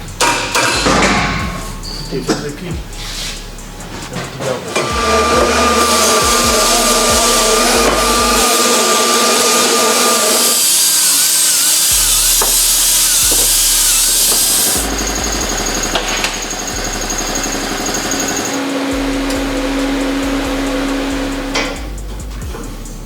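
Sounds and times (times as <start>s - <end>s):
quiet workshop sounds: 3.0s - 22.6s
power tool on metal: 4.7s - 21.9s.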